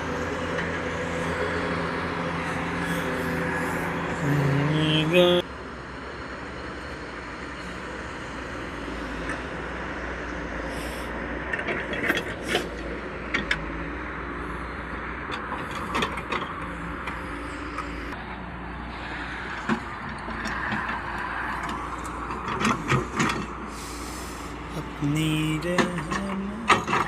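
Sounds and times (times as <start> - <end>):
vehicle engine running: 0.0 - 27.0.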